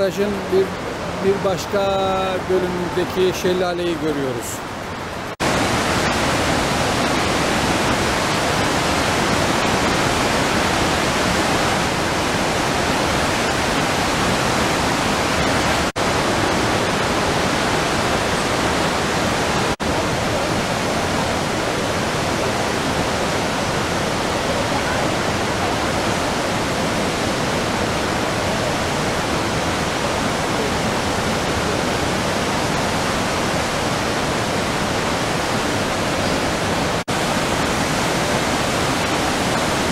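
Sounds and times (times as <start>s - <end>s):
waterfall roar: 0.0s - 39.9s.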